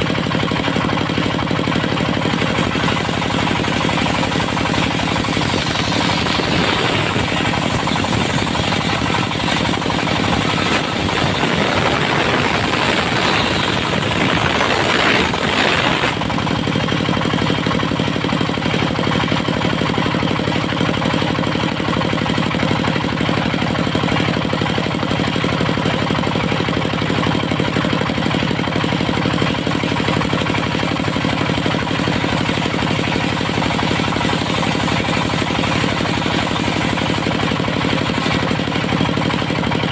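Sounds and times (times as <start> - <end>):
sawmill engine running: 0.0 - 39.9
saw blade cutting wood: 1.2 - 17.6, 30.2 - 39.9.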